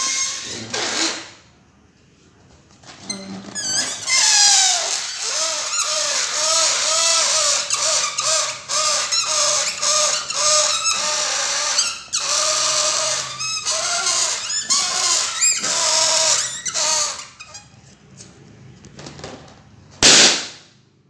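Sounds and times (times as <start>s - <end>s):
balloon squealing: 0.0s - 1.4s, 3.0s - 17.8s
air hissing from balloon: 3.7s - 17.6s.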